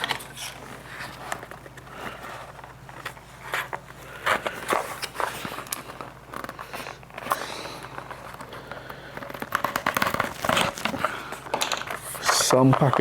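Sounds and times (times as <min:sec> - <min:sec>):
packaging clicks scrapes and rustling: 0:00.0 - 0:13.0.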